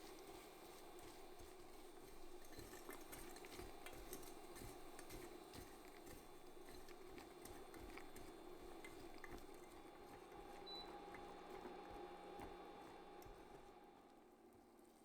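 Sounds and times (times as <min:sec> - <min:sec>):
liquid bubbling in a pan: 0:00.0 - 0:14.0.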